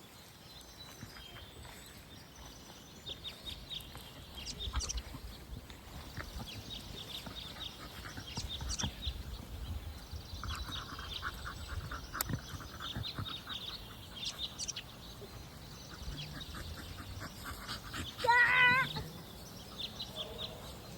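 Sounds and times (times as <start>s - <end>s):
birds chirping: 0.0s - 20.9s
stuttering lower bird calls: 4.2s - 9.6s, 10.2s - 20.9s.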